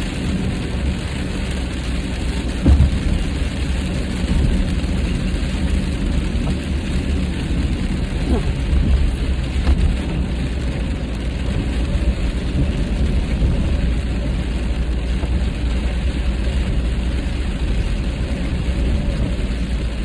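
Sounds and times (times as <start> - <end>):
rain striking windshield: 0.0 - 20.0
road and tyre noise in car: 0.0 - 20.0.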